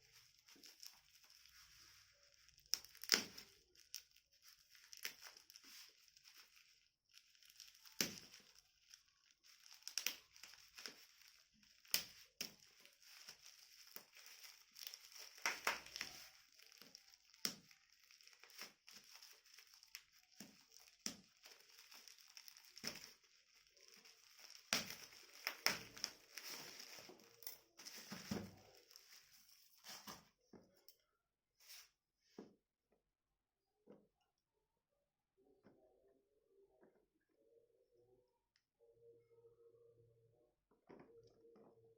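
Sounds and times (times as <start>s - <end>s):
plastic and paper crinkling: 0.0s - 30.4s.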